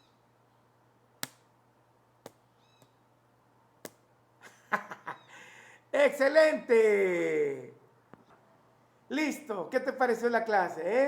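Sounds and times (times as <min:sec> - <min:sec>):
rubber band snapping: 0:01.2 - 0:01.5, 0:03.8 - 0:04.0.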